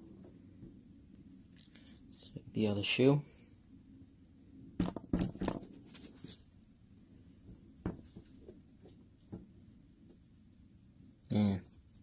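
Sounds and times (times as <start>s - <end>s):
sneaker handling knocks and rustles: 7.8s - 8.6s.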